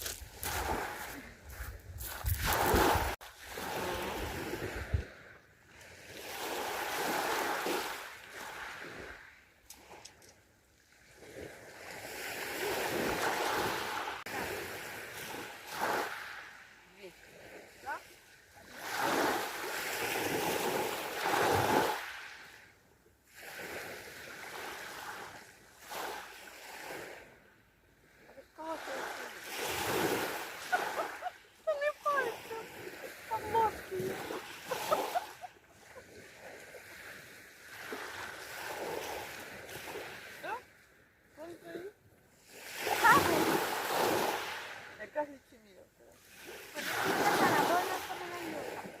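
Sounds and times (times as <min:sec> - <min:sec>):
wind rumbling on microphone: 0:00.0 - 0:03.2, 0:04.1 - 0:05.2
sea waves washing on shore: 0:00.0 - 0:10.1, 0:11.0 - 0:22.7, 0:28.1 - 0:49.0.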